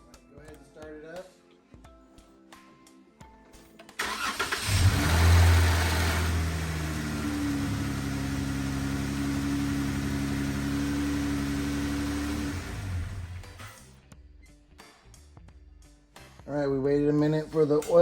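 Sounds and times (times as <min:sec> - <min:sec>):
car engine idling: 0:04.0 - 0:13.7.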